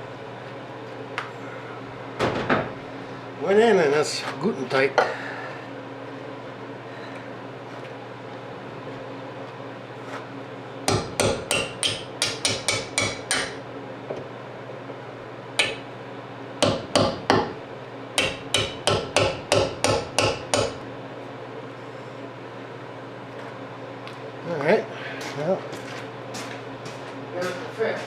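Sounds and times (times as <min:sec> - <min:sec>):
hammer striking metal: 0:10.9 - 0:13.6, 0:15.6 - 0:15.8, 0:16.6 - 0:17.6, 0:18.2 - 0:20.8.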